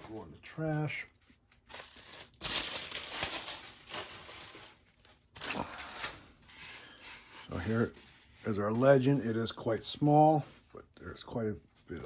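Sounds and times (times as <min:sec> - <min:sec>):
packaging crinkling by hand: 0:00.8 - 0:06.3.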